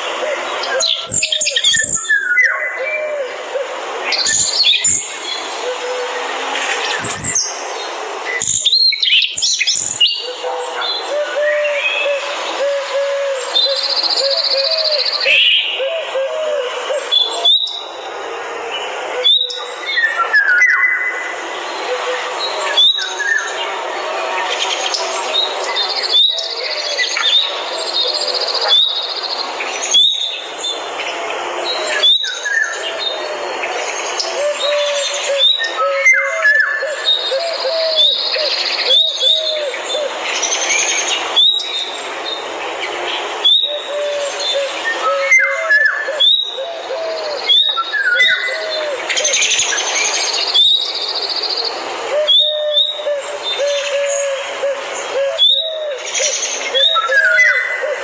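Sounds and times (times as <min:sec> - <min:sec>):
birds chirping and calling: 0:00.0 - 0:58.0
steady hiss: 0:00.0 - 0:58.0
whistled bird notes: 0:00.6 - 0:06.1, 0:08.2 - 0:18.0, 0:18.8 - 0:23.7, 0:24.4 - 0:42.4, 0:43.4 - 0:58.0.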